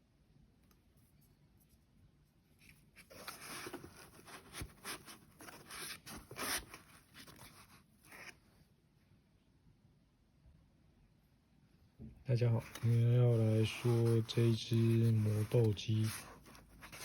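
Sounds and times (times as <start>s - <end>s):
scratchy rubbing and scraping: 12.6s - 17.0s.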